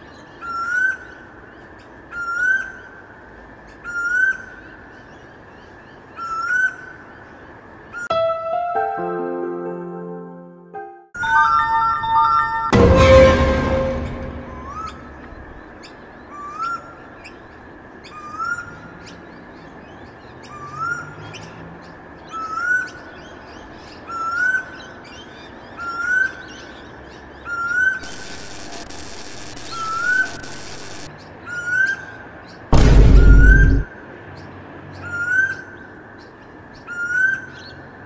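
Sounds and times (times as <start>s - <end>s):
loud chime: 11.2s - 15.2s.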